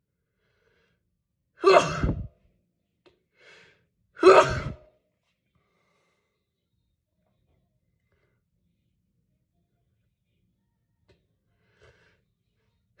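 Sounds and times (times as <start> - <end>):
person sneezing: 1.6 - 2.3, 4.2 - 4.8.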